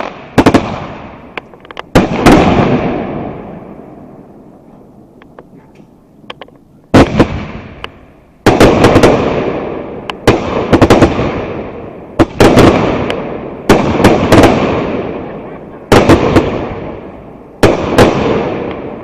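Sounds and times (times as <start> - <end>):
fireworks bangs: 0.0 - 19.0
rumbling echo: 2.0 - 5.2.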